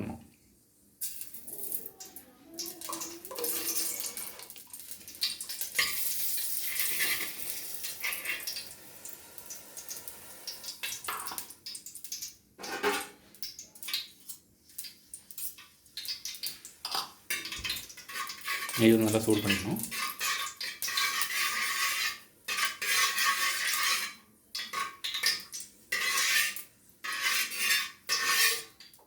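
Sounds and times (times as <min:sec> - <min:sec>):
sizzling in a hot pan: 0:01.0 - 0:29.0
metal spoon scraping a pan: 0:01.5 - 0:04.6, 0:05.7 - 0:08.6, 0:12.6 - 0:13.2, 0:13.8 - 0:29.0.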